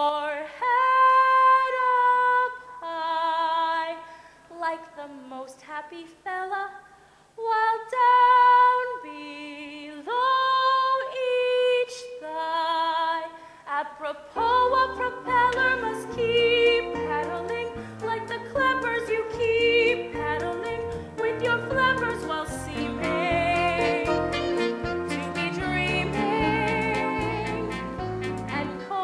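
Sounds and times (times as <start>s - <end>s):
woman singing with vibrato: 0.0s - 29.0s
musical accompaniment with bass: 14.4s - 29.0s.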